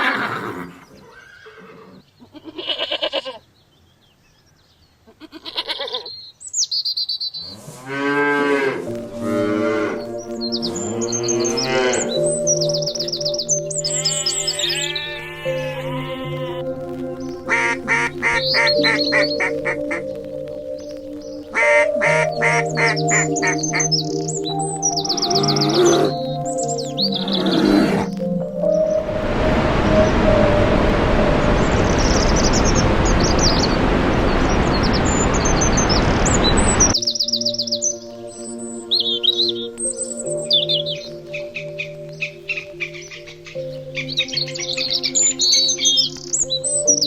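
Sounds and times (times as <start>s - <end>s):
small birds chirping: 3.3s - 7.6s, 9.9s - 29.1s, 30.0s - 47.0s
falling calls: 7.3s - 47.0s
soft background music: 7.9s - 47.0s
loud steady rushing noise: 28.7s - 37.0s.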